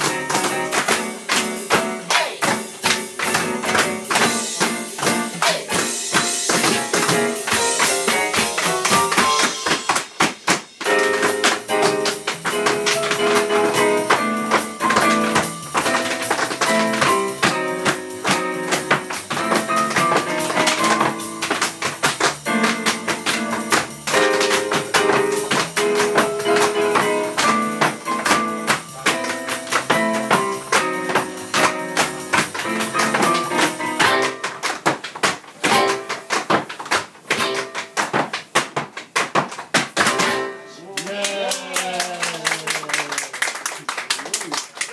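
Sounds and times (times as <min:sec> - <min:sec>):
fast tapping percussion: 0:00.0 - 0:40.4.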